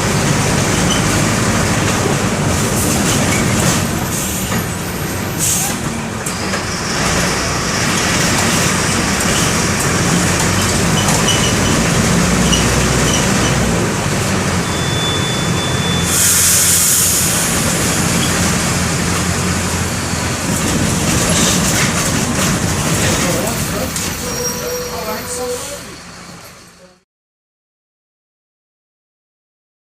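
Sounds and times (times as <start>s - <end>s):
bus diesel engine running: 0.0s - 27.0s
road noise: 0.0s - 27.0s
air hiss: 16.1s - 17.8s
thin high squeal: 24.2s - 26.2s.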